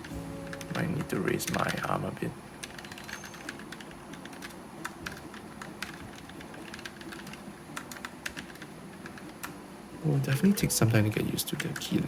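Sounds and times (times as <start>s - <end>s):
mechanical keyboard key clacks: 1.4s - 1.9s.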